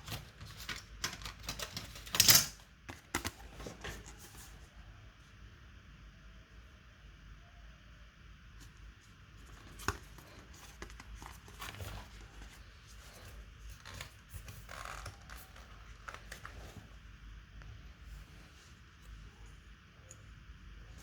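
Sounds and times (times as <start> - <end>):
hands handling laptop parts: 0.0 - 4.6, 8.6 - 17.0.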